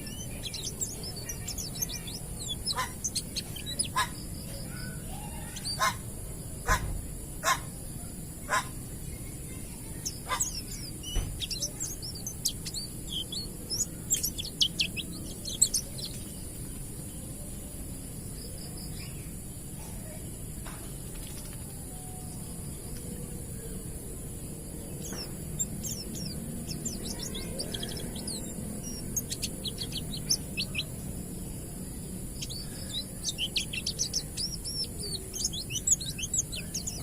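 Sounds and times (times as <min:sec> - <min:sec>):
bird singing high sliding chirps: 0:00.0 - 0:06.1, 0:08.5 - 0:17.4, 0:23.2 - 0:37.0.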